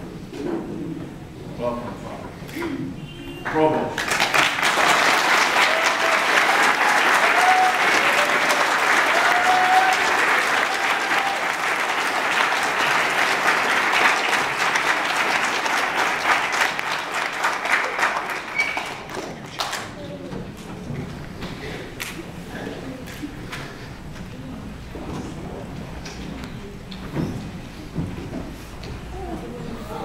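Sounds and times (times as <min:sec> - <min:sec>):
congregation applauding: 0:03.9 - 0:20.0.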